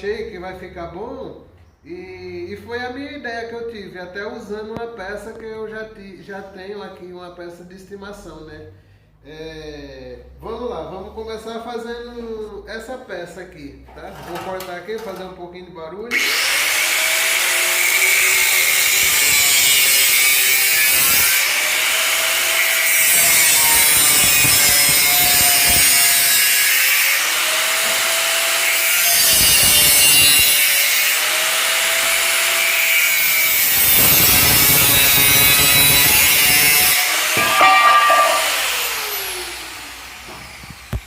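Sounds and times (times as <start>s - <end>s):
power tool cutting steel tube: 16.1s - 41.0s.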